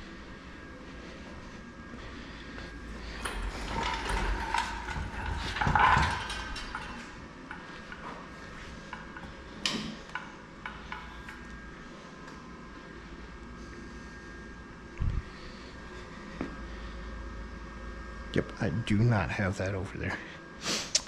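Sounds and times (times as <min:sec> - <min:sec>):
metal tools clinking and clanking: 0:03.0 - 0:08.2.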